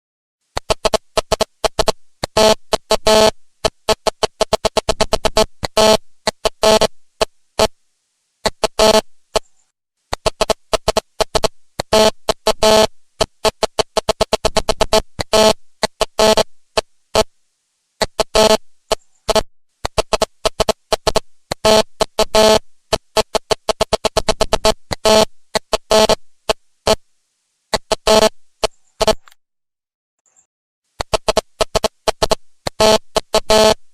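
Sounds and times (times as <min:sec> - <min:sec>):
fax machine motor buzzing: 0:10.2 - 0:16.4.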